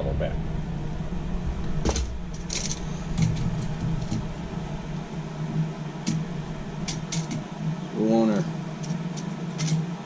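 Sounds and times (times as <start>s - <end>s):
low mechanical hum: 0.0s - 10.0s
objects being handled clicking: 6.8s - 7.4s.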